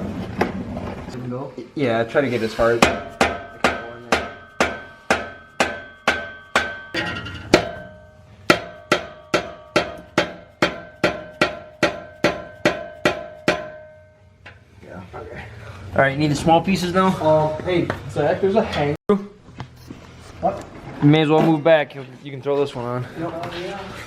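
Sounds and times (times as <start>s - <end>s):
hammer striking metal pipe: 2.8s - 14.6s
pipe ringing: 2.9s - 14.6s.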